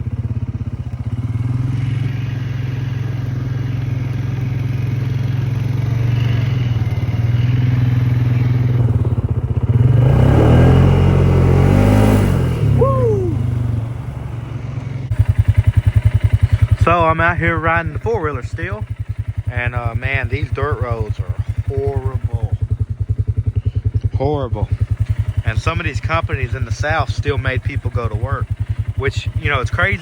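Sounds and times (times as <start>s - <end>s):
atv engine running and revving: 0.0s - 30.0s.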